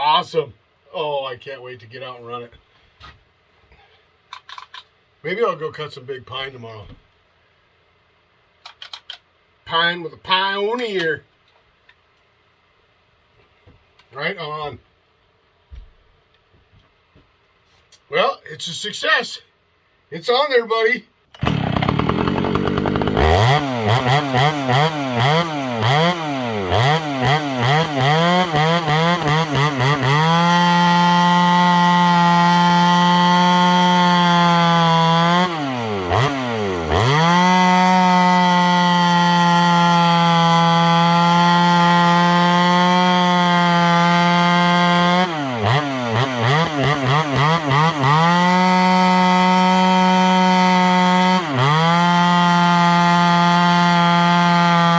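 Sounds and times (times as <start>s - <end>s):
chainsaw revving: 21.4s - 54.9s.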